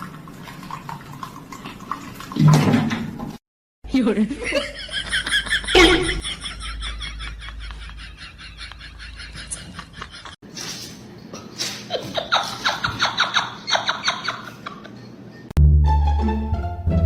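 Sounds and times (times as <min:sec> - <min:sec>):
person laughing in bursts: 0:04.4 - 0:10.4.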